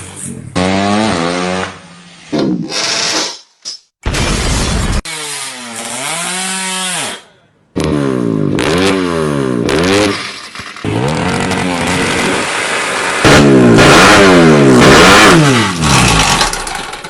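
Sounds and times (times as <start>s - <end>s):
motorcycle engine revving: 0.0s - 3.0s, 7.7s - 17.0s.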